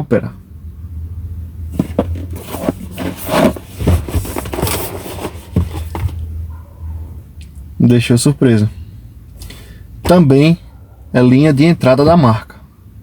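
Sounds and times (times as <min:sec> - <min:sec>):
objects scraping and rubbing: 0:01.7 - 0:06.3.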